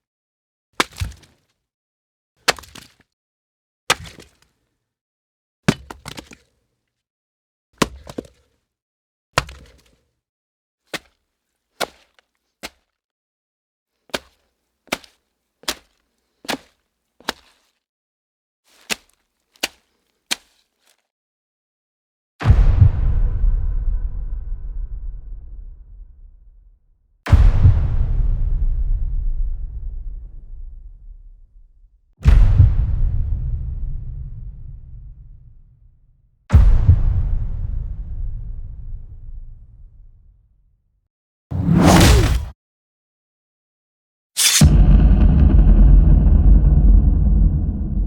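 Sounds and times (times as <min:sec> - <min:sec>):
sharp impact whacks and cracks: 0:41.6 - 0:42.5, 0:44.4 - 0:47.2.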